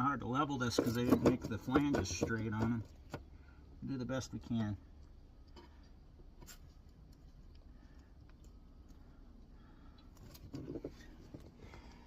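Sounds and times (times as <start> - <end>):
faint clicks and scraping: 4.6 - 12.0.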